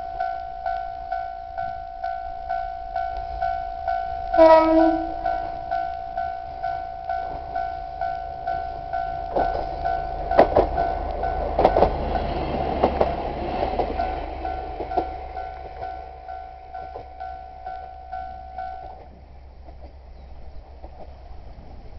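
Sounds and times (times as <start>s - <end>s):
level-crossing warning bell ringing: 0.0s - 19.0s
outdoor background: 0.0s - 21.9s
train wheels clacking on rails: 3.9s - 20.0s.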